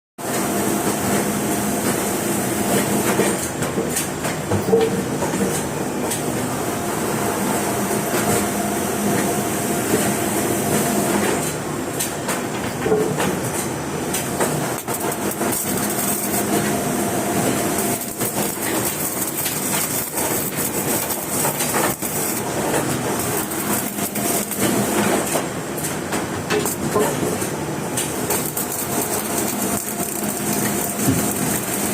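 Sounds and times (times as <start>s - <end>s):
welding arc crackling: 14.6s - 25.3s, 27.9s - 31.9s.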